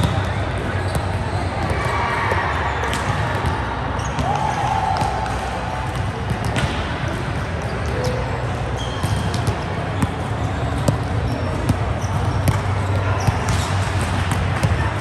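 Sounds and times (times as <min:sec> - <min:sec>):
volleyball impacts: 0:09.0 - 0:15.0.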